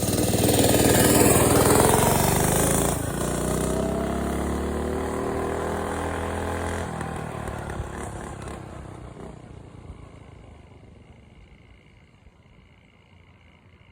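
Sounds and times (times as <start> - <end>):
small engine revving: 0.0 - 9.6.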